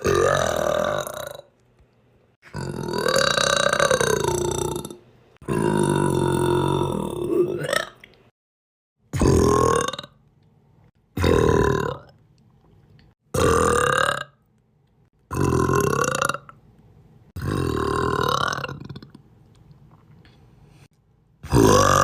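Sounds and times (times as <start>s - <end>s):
person burping: 0.0s - 1.5s, 2.4s - 8.0s, 9.1s - 10.2s, 11.2s - 12.2s, 13.3s - 14.4s, 15.3s - 16.6s, 17.4s - 19.1s, 21.4s - 22.0s.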